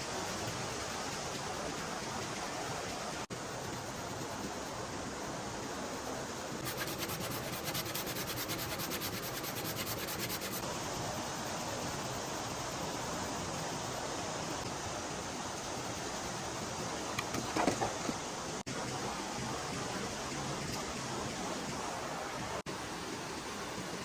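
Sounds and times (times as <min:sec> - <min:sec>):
rapid rubbing strokes: 0:06.6 - 0:10.7.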